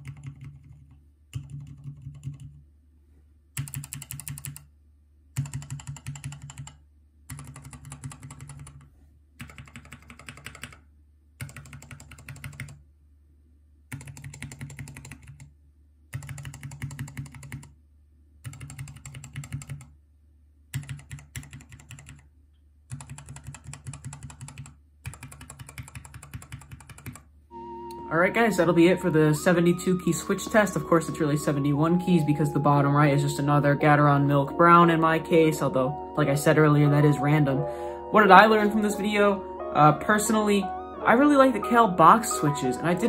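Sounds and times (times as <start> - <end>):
keyboard switches pressed rapidly: 0.0 - 2.6, 3.6 - 4.6, 5.4 - 8.8, 11.4 - 12.8, 20.7 - 22.2, 22.9 - 27.2.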